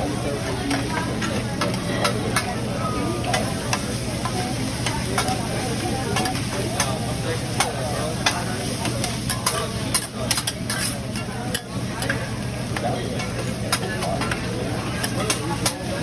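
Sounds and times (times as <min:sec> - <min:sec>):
food sizzling on griddle: 0:02.0 - 0:16.0
metal spatulas clicking and tapping: 0:03.3 - 0:05.4, 0:06.2 - 0:07.0, 0:07.6 - 0:12.2, 0:15.0 - 0:15.8.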